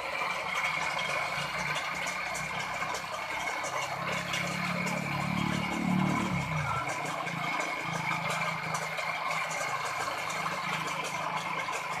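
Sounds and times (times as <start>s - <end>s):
constant clattering: 0.0s - 12.0s
small engine running: 0.0s - 12.0s.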